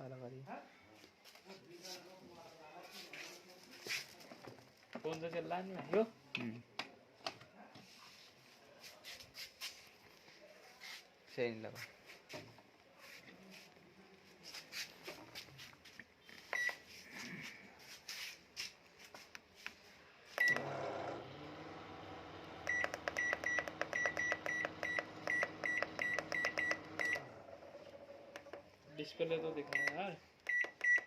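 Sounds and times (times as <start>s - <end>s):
microwave oven humming: 20.4s - 28.4s
keypad clicks: 22.7s - 27.1s
short high beeps: 29.8s - 31.0s.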